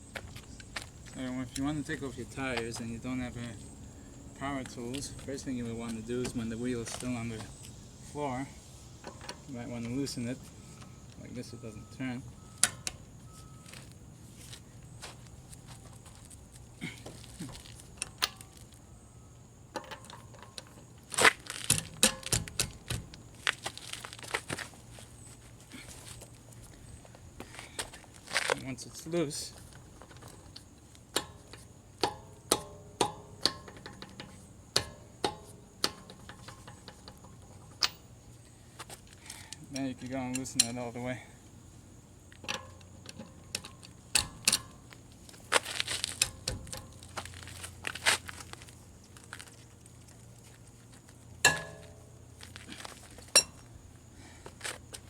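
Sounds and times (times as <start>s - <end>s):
lug wrench clinking on nut: 12.5s - 13.0s, 17.4s - 18.6s, 19.7s - 23.2s, 30.0s - 38.2s, 39.2s - 40.9s, 42.4s - 45.0s, 51.4s - 52.2s, 53.2s - 53.7s.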